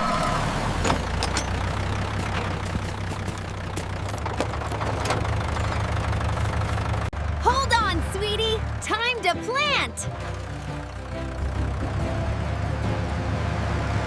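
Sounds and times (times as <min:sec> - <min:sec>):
tractor engine idling: 0:00.0 - 0:14.0.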